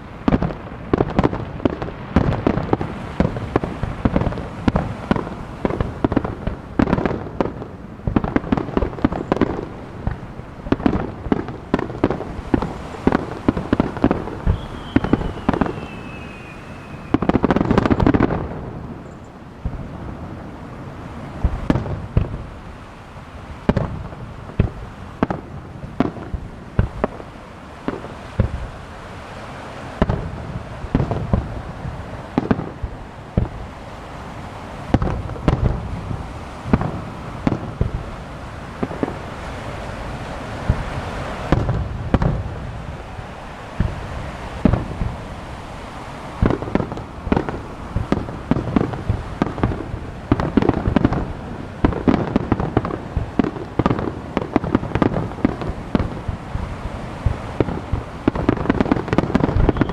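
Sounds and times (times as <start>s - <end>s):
fireworks crackling and hissing: 0.0s - 59.9s
firework shell bursts: 12.6s - 18.1s.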